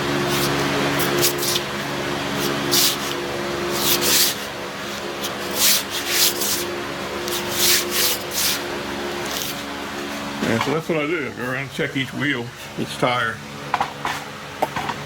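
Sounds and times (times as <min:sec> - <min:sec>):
steady multi-tone hum: 0:00.0 - 0:15.0
hissing scraping strokes: 0:02.3 - 0:10.2.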